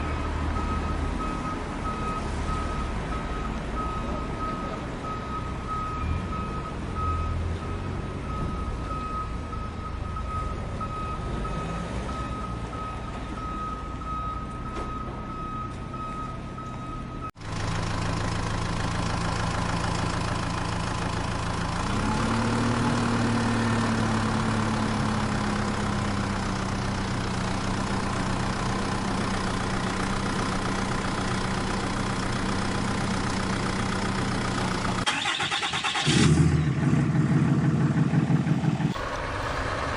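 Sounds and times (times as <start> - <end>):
vehicle reversing beeper: 0.0 - 17.4
engine idling: 17.3 - 21.9, 23.0 - 39.9.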